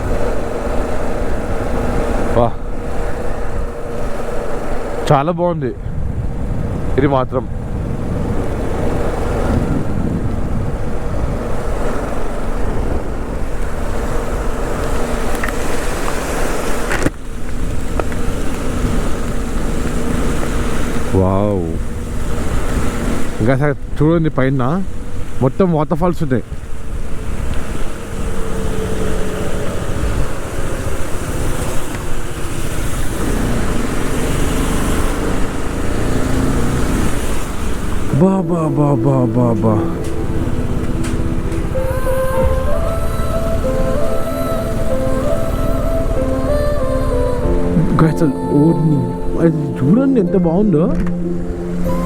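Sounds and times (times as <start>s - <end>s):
motorcycle engine: 0.0s - 52.0s
wind and road noise: 0.0s - 52.0s.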